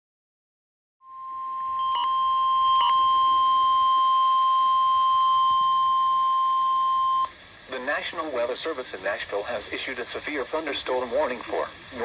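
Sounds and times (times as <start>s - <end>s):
steady high warning beep: 1.1s - 7.3s.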